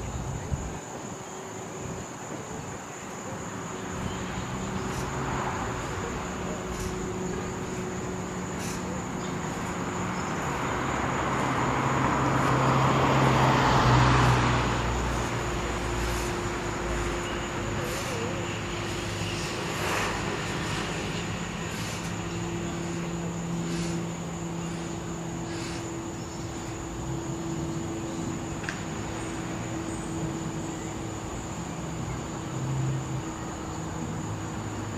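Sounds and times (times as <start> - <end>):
propeller plane droning overhead: 0.0 - 34.9.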